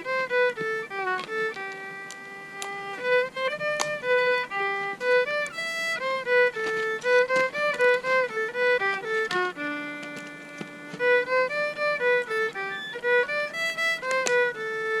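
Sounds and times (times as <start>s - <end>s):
instrumental melody with slides: 0.0s - 15.0s.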